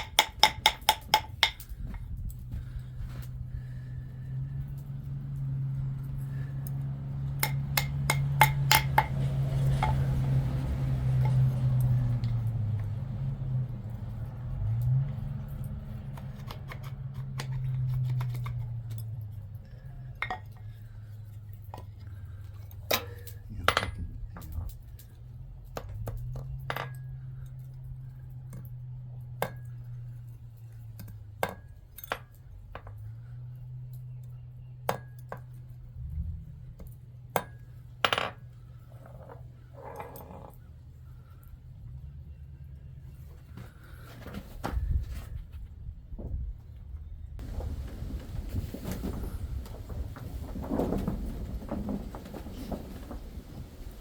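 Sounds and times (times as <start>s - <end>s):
small hammer striking metal: 0.0s - 1.7s, 7.4s - 9.2s
steady low hum: 0.0s - 14.6s.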